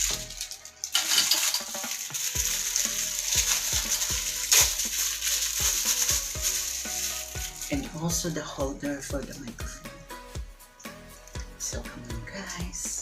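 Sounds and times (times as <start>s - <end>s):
steady sizzling hiss: 0.0s - 9.1s
music with low thumping beat: 2.4s - 13.0s.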